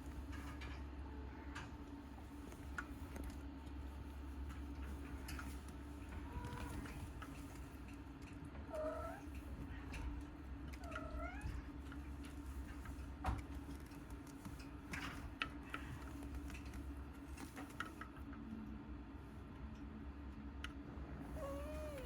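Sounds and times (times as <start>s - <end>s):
light clicks and taps: 1.6s - 8.4s, 9.3s - 18.8s
kitten mewing: 21.3s - 22.0s.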